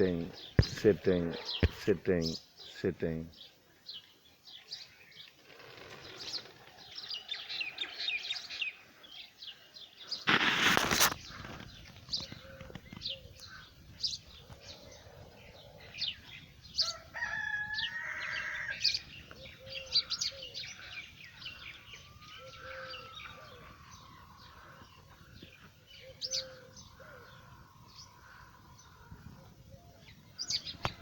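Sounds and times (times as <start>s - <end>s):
small birds chirping: 0.0s - 31.0s
rooster crowing: 16.8s - 19.0s.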